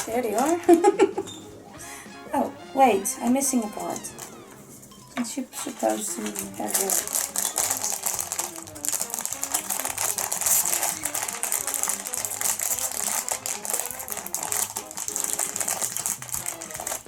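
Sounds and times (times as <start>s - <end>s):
plastic pieces clicking and clattering: 0.0s - 1.1s, 5.2s - 17.0s
rustling: 3.0s - 17.0s.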